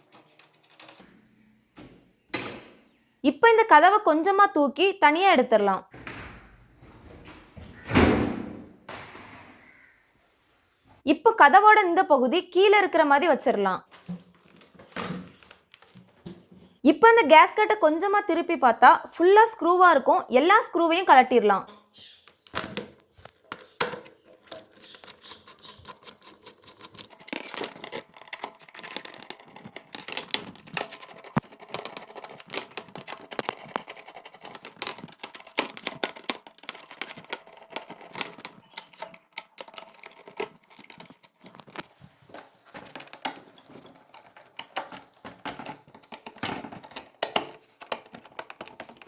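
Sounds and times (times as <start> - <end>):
plastic scraping: 22.0 - 49.0.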